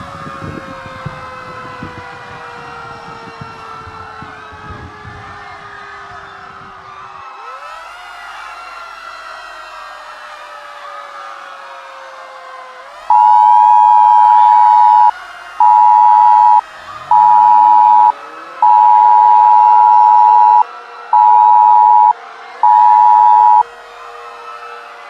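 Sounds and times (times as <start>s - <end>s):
sirens wailing: 0.0s - 25.0s
two-tone alert beep: 13.1s - 20.6s, 21.2s - 23.6s.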